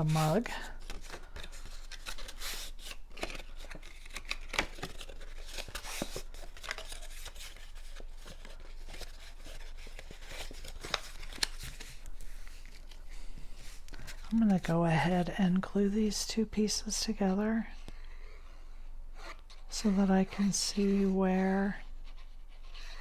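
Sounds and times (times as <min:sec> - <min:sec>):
paper rustling: 0:00.0 - 0:15.3.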